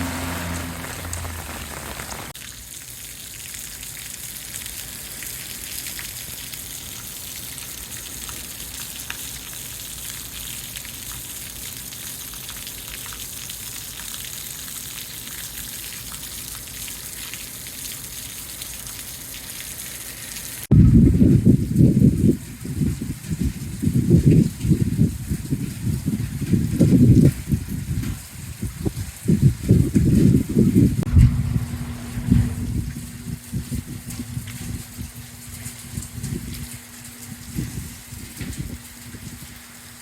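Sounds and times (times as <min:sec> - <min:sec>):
loud low rumble: 0:00.0 - 0:02.4, 0:31.0 - 0:33.4
raindrops ticking: 0:00.0 - 0:17.9
steady rain falling: 0:00.0 - 0:20.7, 0:21.3 - 0:40.0
low steady hum: 0:31.0 - 0:35.8.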